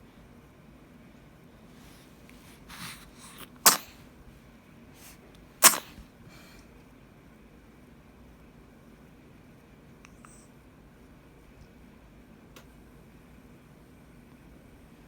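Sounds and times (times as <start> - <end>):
soft breathy intakes: 1.8 - 4.1, 5.0 - 6.7
baby sneezing: 1.9 - 4.1, 5.0 - 6.6.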